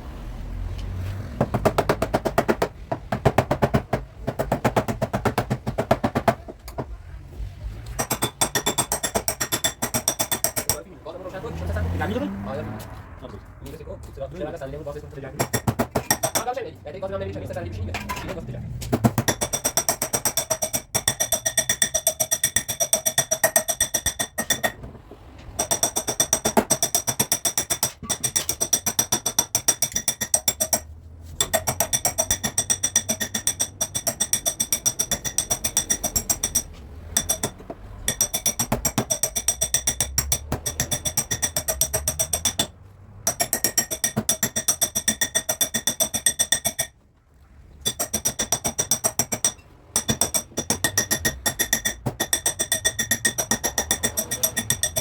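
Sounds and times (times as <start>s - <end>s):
hammer tapping metal panel: 1.4s - 6.9s, 15.4s - 16.6s.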